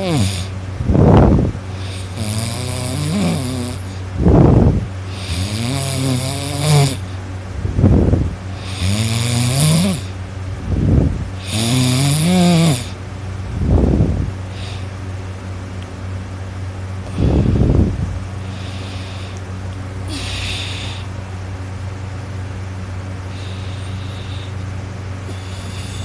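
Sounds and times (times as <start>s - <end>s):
person snoring loudly: 0.0s - 1.2s, 1.8s - 7.2s, 8.6s - 10.1s, 11.4s - 13.0s, 20.1s - 21.1s.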